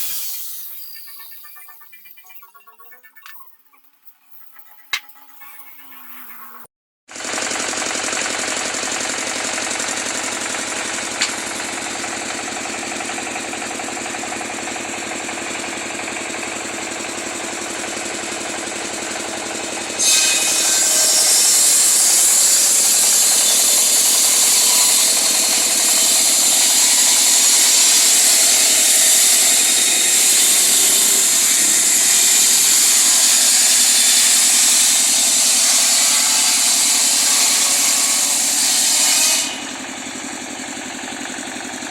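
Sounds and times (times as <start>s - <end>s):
power tool motor running: 7.2s - 41.9s
sharp click: 11.2s - 11.4s.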